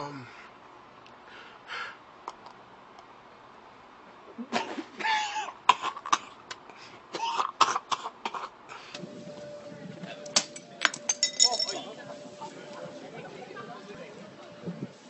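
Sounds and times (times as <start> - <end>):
steady faint tone: 9.0 - 15.0.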